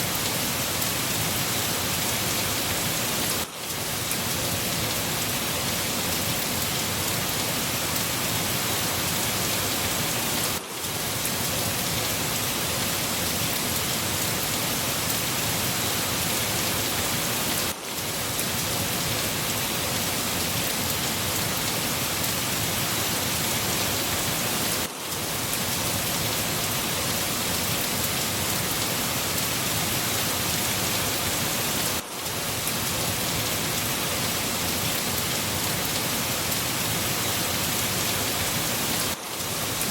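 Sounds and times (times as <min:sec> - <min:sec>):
dense rain falling: 0:00.0 - 0:39.9.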